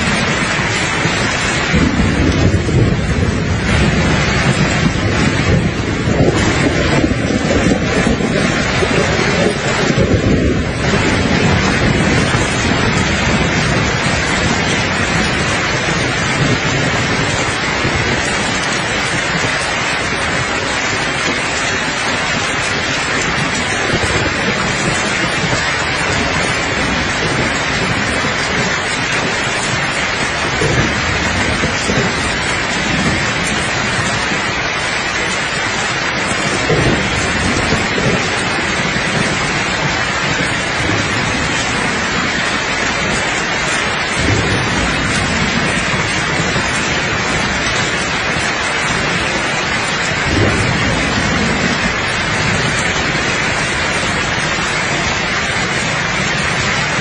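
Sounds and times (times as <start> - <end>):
faint rolling thunder: 0.0 - 57.0
steady rain: 0.0 - 57.0.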